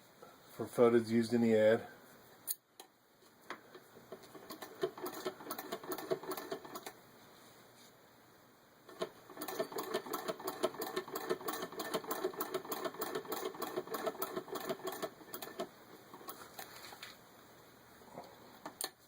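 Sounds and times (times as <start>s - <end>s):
sewing machine clatter: 4.2s - 6.9s, 8.9s - 16.8s.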